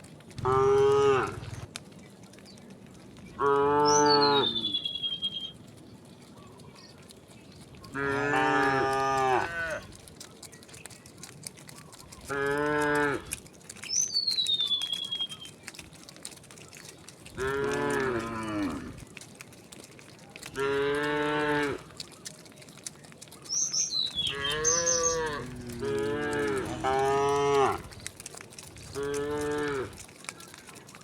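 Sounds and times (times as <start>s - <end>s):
cattle mooing: 0.4s - 1.7s, 7.9s - 9.8s, 12.3s - 13.3s, 17.3s - 19.0s, 20.6s - 21.9s, 24.2s - 28.0s, 29.0s - 30.0s.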